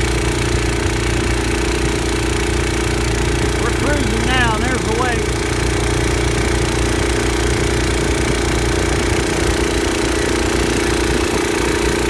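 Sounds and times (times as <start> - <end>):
small engine running steadily: 0.0 - 12.0.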